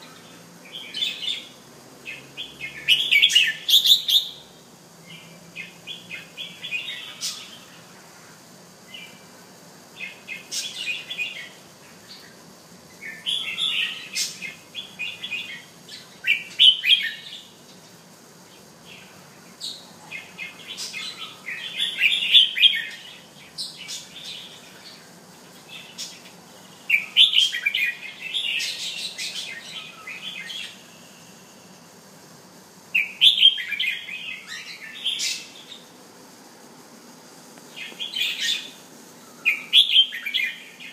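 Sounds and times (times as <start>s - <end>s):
bird singing chirpy phrases: 0.0s - 4.5s, 13.0s - 17.6s, 25.6s - 30.9s, 37.7s - 40.9s.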